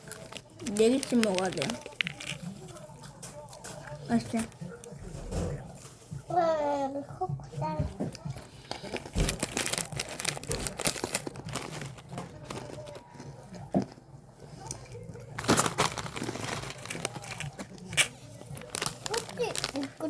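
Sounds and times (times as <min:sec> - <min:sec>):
plastic packaging crinkling: 0:00.0 - 0:04.6, 0:08.1 - 0:14.0, 0:15.2 - 0:20.0.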